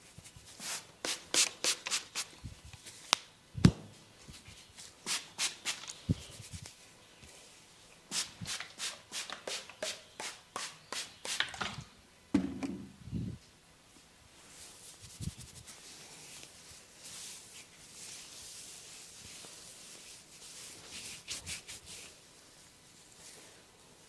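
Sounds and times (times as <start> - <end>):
hands massaging hair crackling: 14.5 - 22.2.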